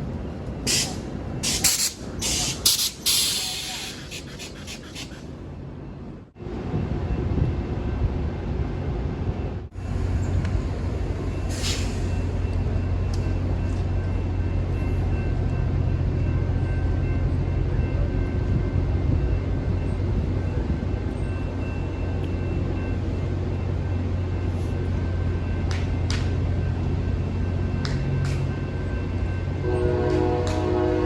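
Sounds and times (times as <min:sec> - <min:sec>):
diesel locomotive rumbling: 0:00.0 - 0:31.0
short air hiss: 0:00.7 - 0:04.1, 0:11.5 - 0:12.1.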